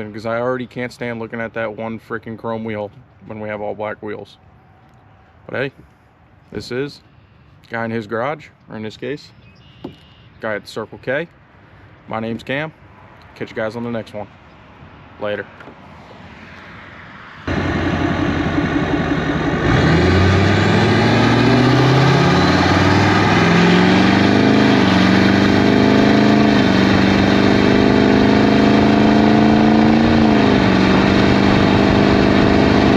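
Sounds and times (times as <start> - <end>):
vehicle engine accelerating: 16.7 - 32.9.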